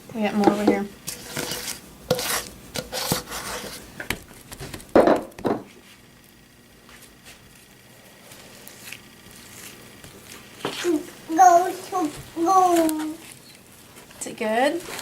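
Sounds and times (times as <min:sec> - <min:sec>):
utensils scraping against bowl: 0:00.2 - 0:03.9.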